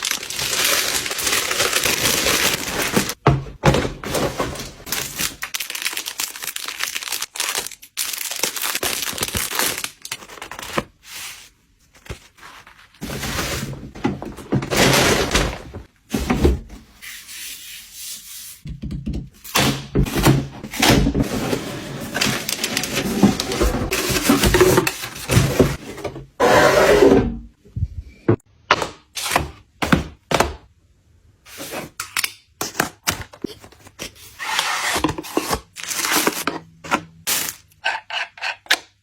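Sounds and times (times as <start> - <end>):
cardboard and plastic rubbing and tearing: 0.0 - 3.2, 20.1 - 26.0, 34.4 - 36.6.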